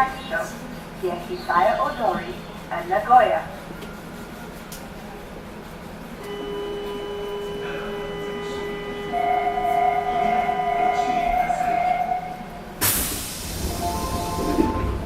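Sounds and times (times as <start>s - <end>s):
train electrical whine: 0.0s - 15.0s
loud hiss of air: 12.8s - 14.3s.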